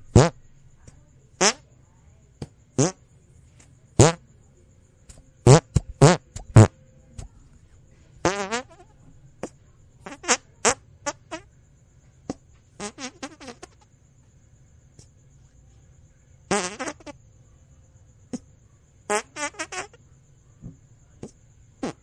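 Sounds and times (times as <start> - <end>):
fart sound effects: 0.1 - 0.4, 1.4 - 1.6, 2.8 - 3.0, 4.0 - 4.2, 5.4 - 6.7, 8.2 - 8.8, 12.3 - 13.8, 16.5 - 17.2, 19.1 - 20.0, 21.2 - 22.0.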